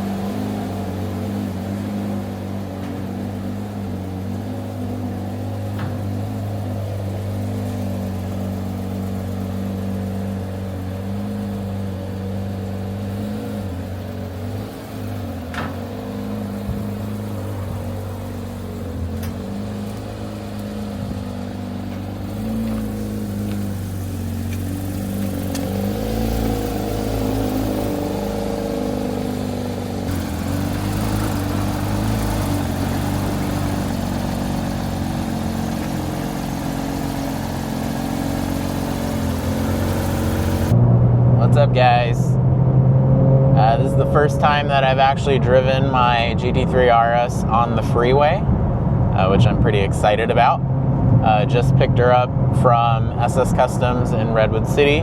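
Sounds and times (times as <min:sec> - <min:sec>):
car engine at speed: 0:00.0 - 0:55.0
road rumble: 0:00.0 - 0:55.0.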